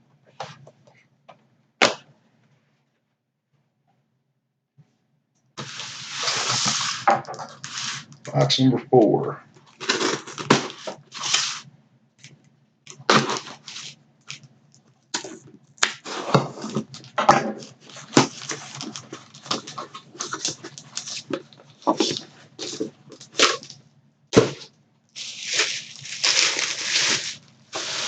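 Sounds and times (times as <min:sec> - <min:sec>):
packing rustling: 0:05.6 - 0:08.2, 0:09.6 - 0:11.6, 0:12.9 - 0:14.4, 0:15.2 - 0:23.8, 0:24.4 - 0:28.0
low steady hum: 0:05.6 - 0:28.0
cardboard box being opened: 0:09.7 - 0:11.6, 0:15.9 - 0:23.7, 0:24.4 - 0:28.0.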